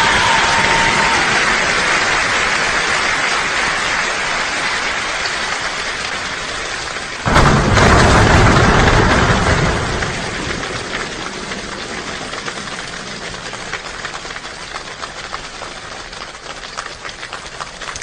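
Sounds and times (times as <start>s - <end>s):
rain drumming on a roof: 0.0s - 18.0s
thunder clap and rumble: 7.2s - 16.4s.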